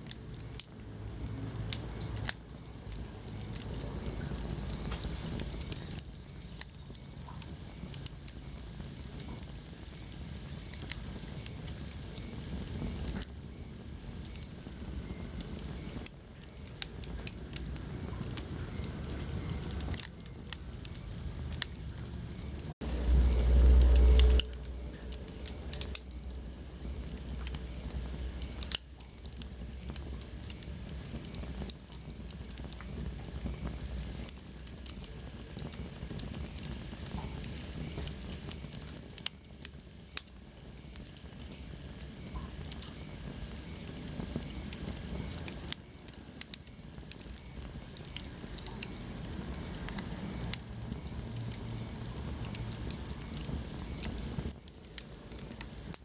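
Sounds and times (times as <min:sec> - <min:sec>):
wood fire crackling: 0:00.0 - 0:56.0
loud low rumble: 0:22.0 - 0:28.1.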